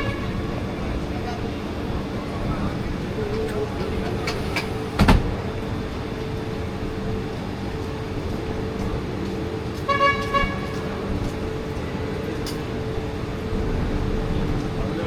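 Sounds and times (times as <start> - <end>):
road traffic rumble: 0.0 - 15.0
car horn toots: 9.9 - 10.7.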